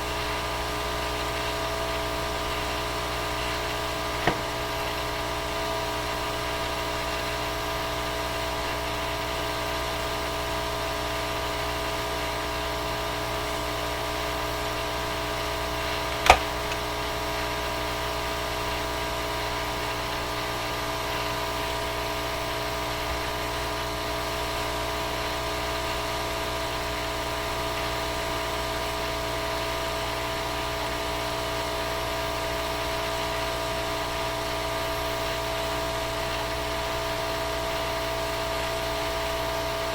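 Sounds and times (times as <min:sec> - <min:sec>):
small fan running: 0:15.3 - 0:17.3
sharp click: 0:16.0 - 0:16.8.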